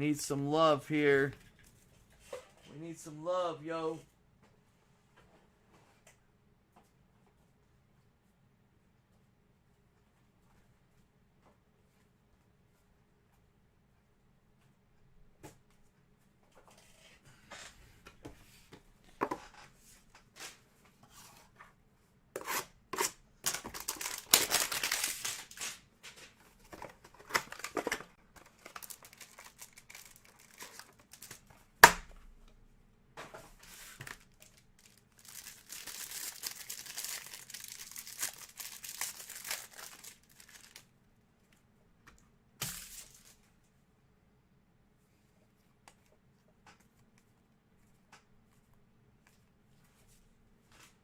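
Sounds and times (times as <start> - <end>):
packaging tearing and crinkling: 23.4 - 25.8, 27.2 - 31.4, 34.0 - 40.8.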